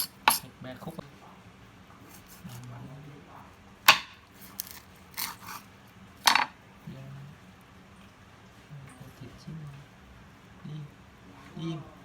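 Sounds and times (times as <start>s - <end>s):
knife chopping fish on board: 3.9s - 5.6s.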